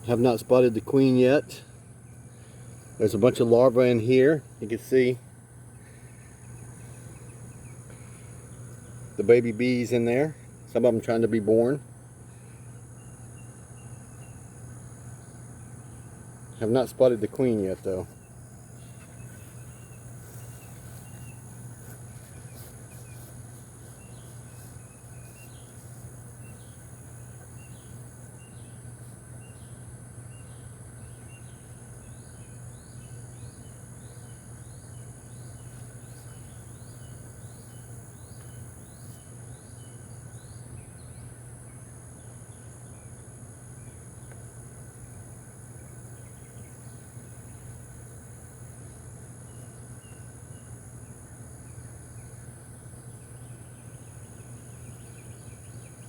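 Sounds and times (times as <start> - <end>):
high insect drone: 0.0 - 56.0
honeybees humming: 0.0 - 56.0
bird chirping: 17.4 - 28.8.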